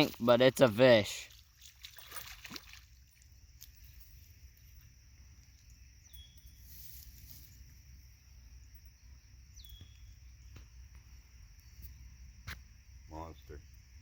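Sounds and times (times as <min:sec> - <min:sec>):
high insect drone: 0:00.0 - 0:14.0.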